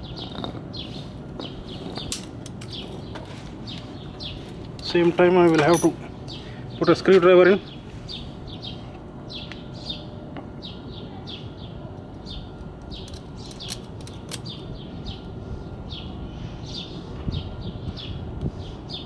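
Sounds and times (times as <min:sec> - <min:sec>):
low background rumble: 0:00.0 - 0:07.0.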